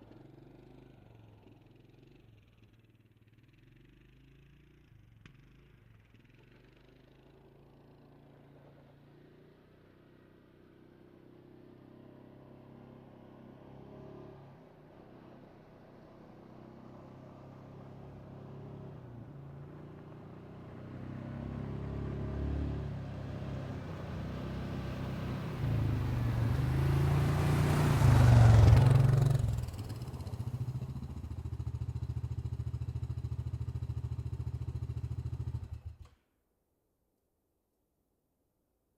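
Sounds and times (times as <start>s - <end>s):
atv engine idling: 28.3s - 36.0s.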